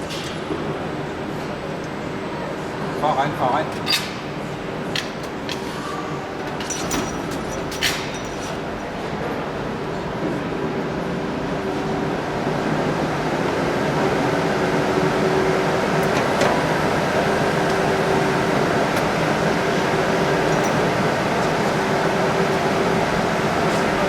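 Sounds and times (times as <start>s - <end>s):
factory machinery humming: 0.0s - 24.0s.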